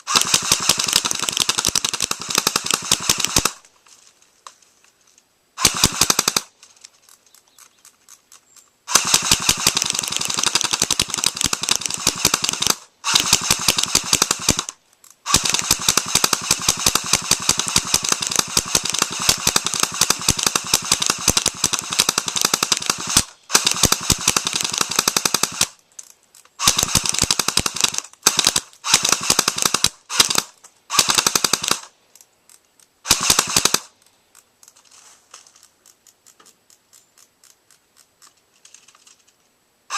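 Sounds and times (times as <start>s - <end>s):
airsoft guns firing bursts: 0.0s - 3.6s, 5.6s - 6.6s, 8.9s - 25.8s, 26.6s - 31.9s, 33.0s - 34.0s.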